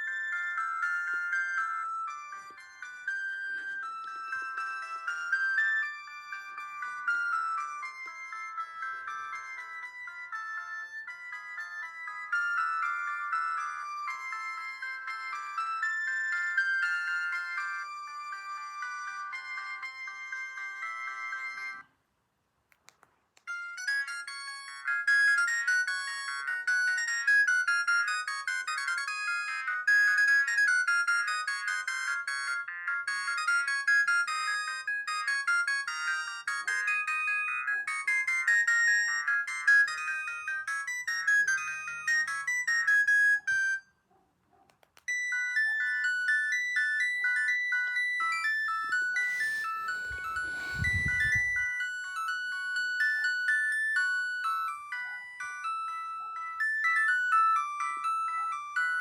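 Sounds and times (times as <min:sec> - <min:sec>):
mobile phone ringtone melody: 0:00.0 - 0:21.9, 0:23.5 - 0:44.0, 0:45.0 - 0:59.0.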